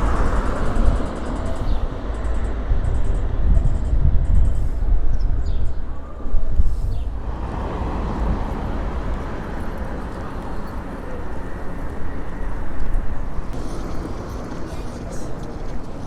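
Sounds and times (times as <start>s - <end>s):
low traffic rumble: 0.0s - 16.0s
passing vehicles: 0.0s - 16.0s.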